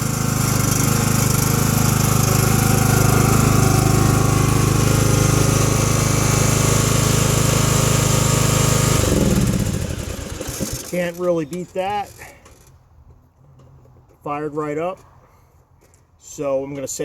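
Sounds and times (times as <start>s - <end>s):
riding mower engine running: 0.0s - 12.8s.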